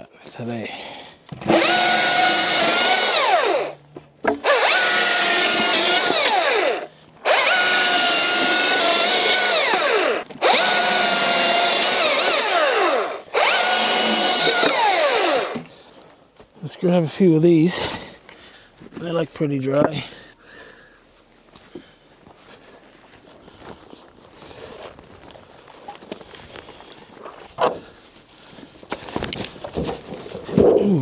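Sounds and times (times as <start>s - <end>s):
chainsaw cutting boards: 1.3s - 15.7s.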